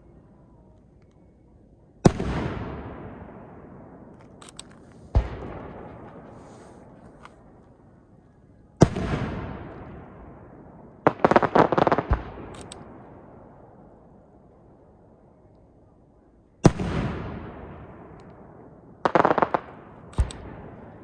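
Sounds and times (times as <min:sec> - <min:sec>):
faint firework crackles: 0:02.0 - 0:10.2
rumbling echo: 0:05.0 - 0:07.2
firework booms: 0:05.1 - 0:07.0, 0:08.8 - 0:12.5.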